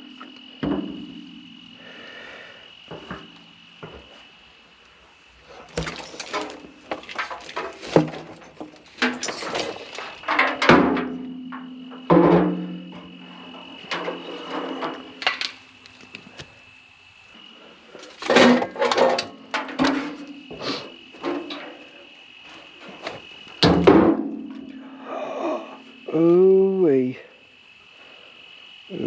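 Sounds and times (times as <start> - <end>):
scrap metal clanking: 5.5 - 16.4, 17.9 - 21.8.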